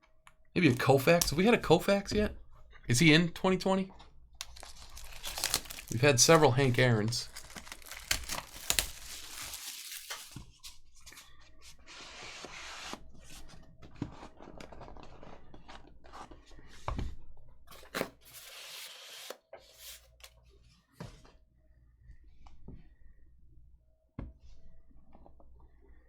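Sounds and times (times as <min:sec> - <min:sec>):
wrappers rustling and tearing: 0:04.4 - 0:10.8, 0:18.2 - 0:20.2.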